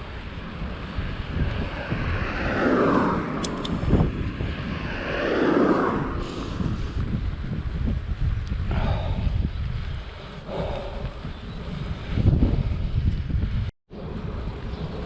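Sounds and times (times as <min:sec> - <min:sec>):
motor vehicles passing: 0:00.0 - 0:08.2
wind rumbling on microphone: 0:00.0 - 0:15.0.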